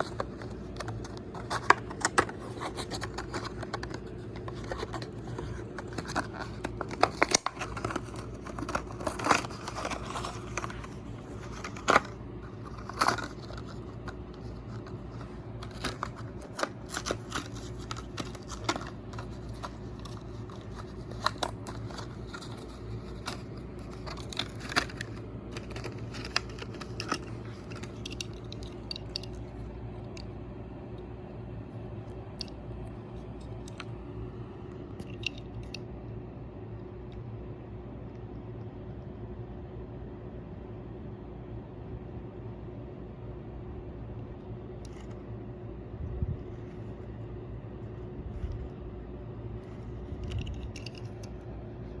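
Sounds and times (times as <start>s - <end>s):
plastic and card packaging rustling: 0.0s - 29.8s, 49.6s - 52.0s
steady low hum: 0.0s - 52.0s.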